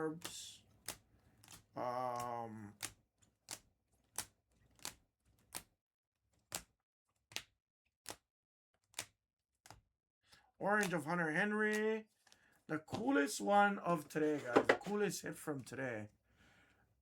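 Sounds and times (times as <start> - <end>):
trading cards clicking down: 14.2 - 15.0.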